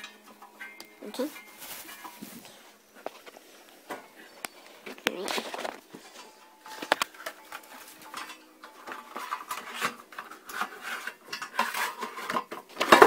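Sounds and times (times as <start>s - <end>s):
metal parts and screws clinking: 3.9s - 13.0s.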